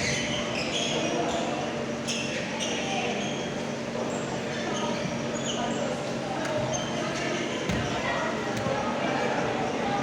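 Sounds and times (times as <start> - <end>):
sneakers squeaking on floor: 0.0 - 1.5.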